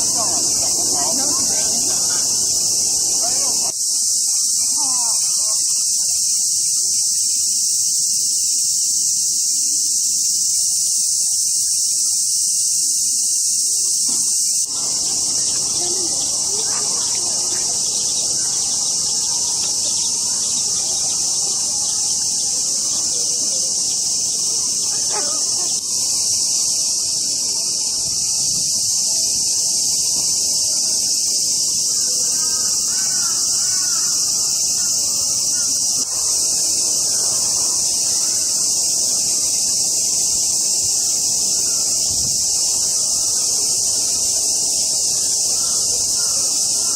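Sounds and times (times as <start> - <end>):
bird calls: 0.0 - 3.7, 14.0 - 26.0, 31.9 - 38.8, 45.2 - 46.9
cicadas droning: 0.0 - 46.9.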